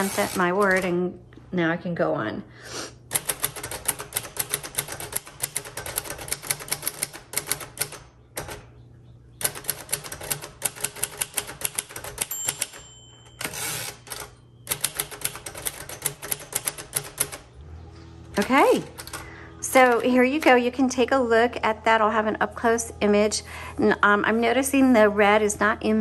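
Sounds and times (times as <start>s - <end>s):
typewriter carriage return: 0.0s - 1.0s, 3.1s - 8.7s, 9.4s - 17.7s, 18.3s - 20.8s
typewriter key strikes: 3.1s - 8.7s, 9.4s - 17.5s
typewriter margin bell: 9.4s - 17.4s.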